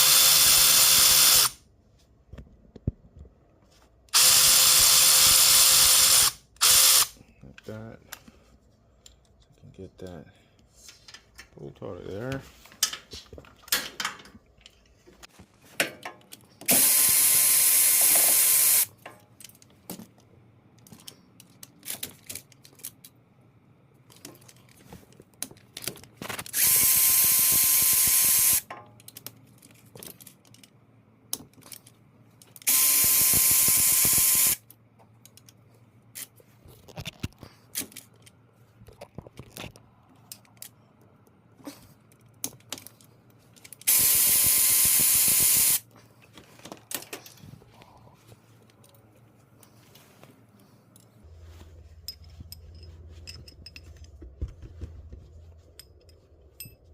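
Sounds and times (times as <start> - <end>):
power ratchet whining: 0.0 - 1.6, 4.1 - 7.2, 16.7 - 18.9, 26.5 - 28.6, 32.6 - 34.6, 43.8 - 45.8
tools clicking and knocking: 12.7 - 14.9, 15.8 - 23.2, 28.6 - 32.7, 34.6 - 35.6, 42.1 - 45.6, 52.0 - 56.9.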